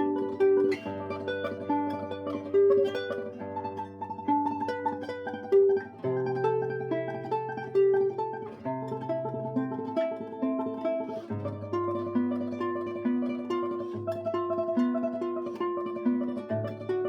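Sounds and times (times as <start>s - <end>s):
classical guitar tremolo: 0.0s - 17.0s.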